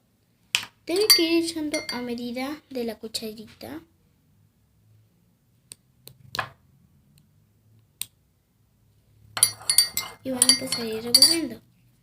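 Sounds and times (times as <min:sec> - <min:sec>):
spoon tapping a bowl: 0:01.0 - 0:02.0, 0:09.4 - 0:11.4.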